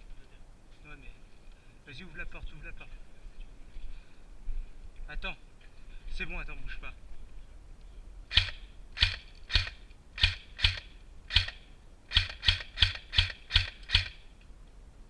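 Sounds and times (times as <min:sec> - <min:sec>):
airsoft gun shots: 0:08.3 - 0:14.2.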